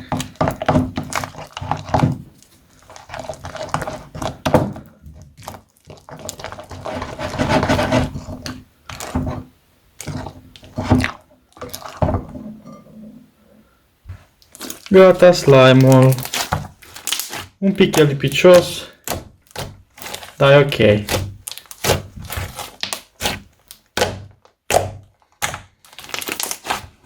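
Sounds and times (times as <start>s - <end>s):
slime squelching: 0.0s - 12.4s, 14.1s - 27.0s
scraping in a bowl: 2.8s - 4.4s, 5.4s - 13.2s.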